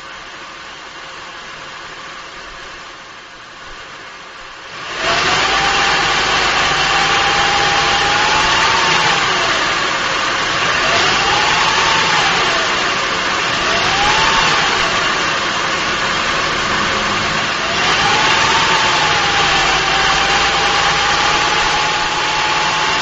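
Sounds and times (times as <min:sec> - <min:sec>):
engine whine rising and falling: 0:04.4 - 0:23.0
car engine running: 0:04.7 - 0:23.0.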